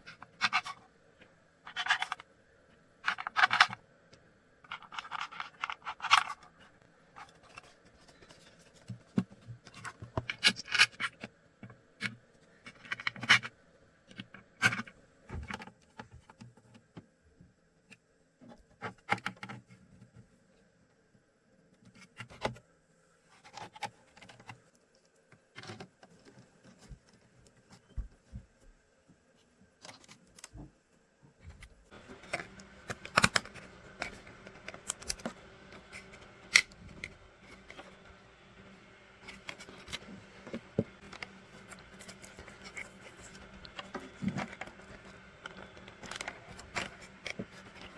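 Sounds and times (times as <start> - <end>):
plastic and metal parts clicking: 31.6 - 38.1, 39.2 - 47.9.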